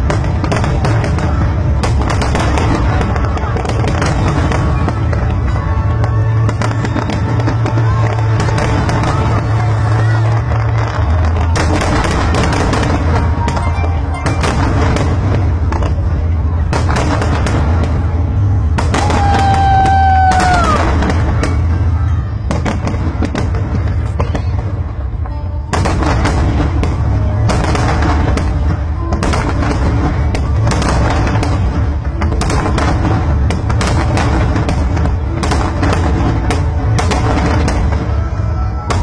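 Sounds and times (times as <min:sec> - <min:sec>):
fireworks bangs and crackles: 0:00.0 - 0:39.0
music playing: 0:00.0 - 0:39.0.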